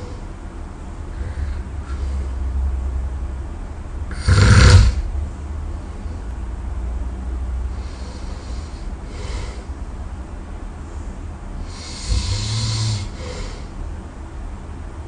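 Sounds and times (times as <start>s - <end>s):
person snoring: 4.1s - 5.1s, 11.6s - 13.7s.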